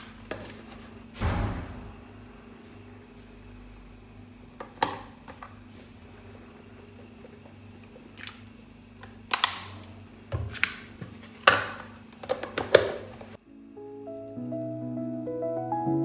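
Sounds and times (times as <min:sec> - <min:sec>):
steady low hum: 0:00.0 - 0:10.3.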